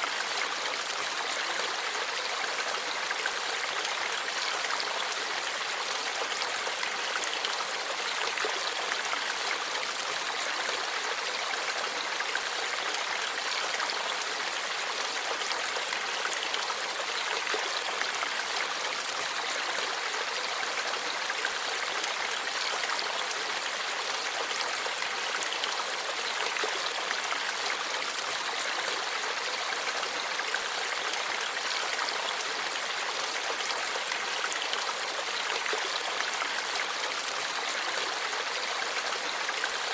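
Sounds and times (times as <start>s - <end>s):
stream babbling over rocks: 0.0s - 39.9s.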